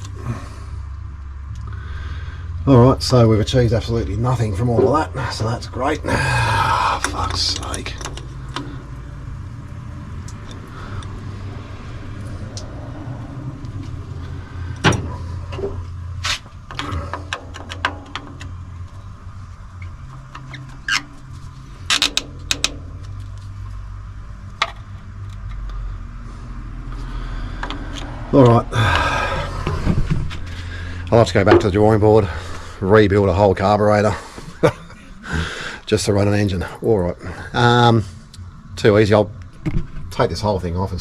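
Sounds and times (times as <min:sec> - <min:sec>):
low steady rumble: 0:00.0 - 0:41.0
clicks and knocks of tools: 0:07.0 - 0:08.8, 0:14.7 - 0:19.0, 0:21.8 - 0:23.6.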